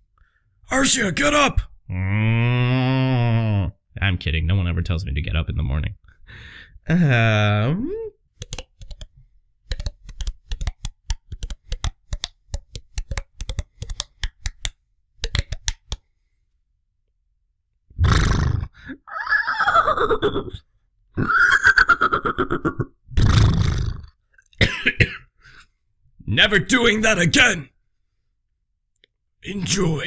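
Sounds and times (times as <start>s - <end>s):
man making mouth clicks: 9.7s - 16.0s.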